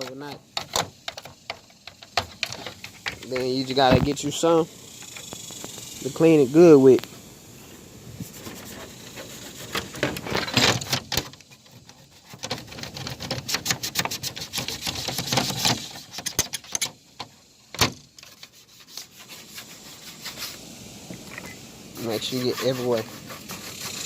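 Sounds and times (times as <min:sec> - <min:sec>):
toothbrush scrubbing: 0:18.3 - 0:20.6, 0:22.0 - 0:24.0.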